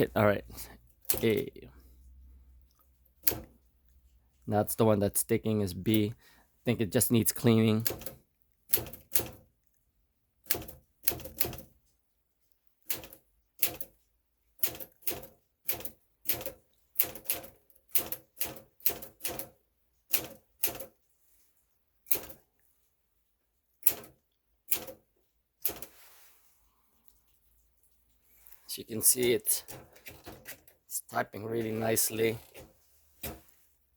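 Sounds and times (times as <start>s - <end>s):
manual typewriter key strikes: 1.0s - 1.5s, 3.2s - 3.5s, 7.8s - 9.4s, 10.4s - 11.7s, 14.6s - 20.9s.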